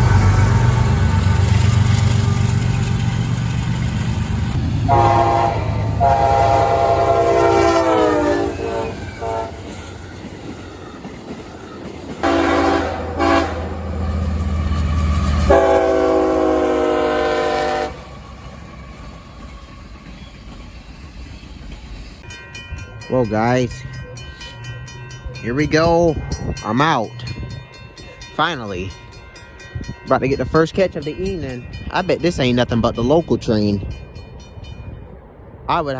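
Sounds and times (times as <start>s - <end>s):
locomotive air horn blasts: 4.8s - 9.7s, 12.2s - 14.0s, 15.4s - 18.1s.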